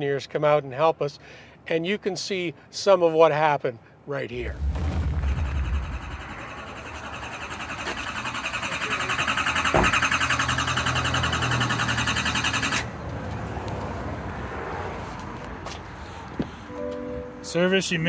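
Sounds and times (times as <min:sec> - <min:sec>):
diesel engine cranking: 0:04.7 - 0:12.9.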